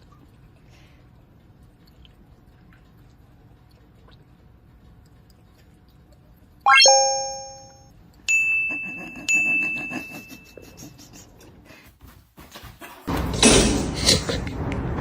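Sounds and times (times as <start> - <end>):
high single-pitched dings: 6.7 - 9.8
bell-like chime: 6.7 - 10.3.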